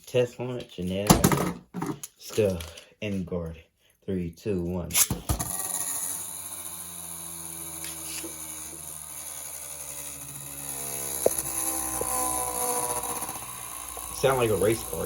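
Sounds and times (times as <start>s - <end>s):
spinning top whining: 5.0s - 15.0s.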